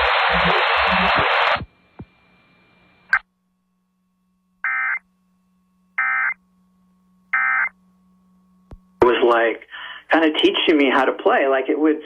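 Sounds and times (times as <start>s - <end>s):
buzzy digital data bursts: 0.0s - 1.6s
static hiss: 0.0s - 3.2s.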